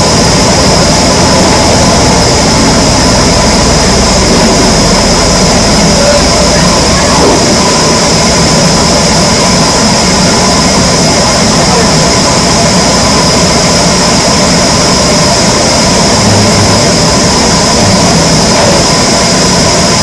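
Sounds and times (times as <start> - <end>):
power saw cutting wood: 0.0 - 9.5, 15.5 - 20.0.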